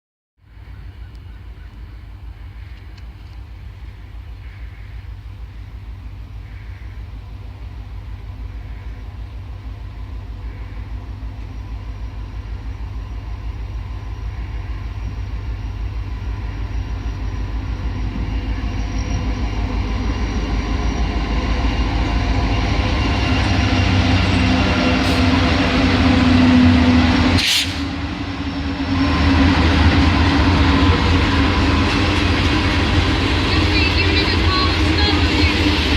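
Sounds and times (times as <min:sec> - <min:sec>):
diesel locomotive engine rumble: 0:00.4 - 0:35.9
brief sharp noise: 0:27.4 - 0:27.9.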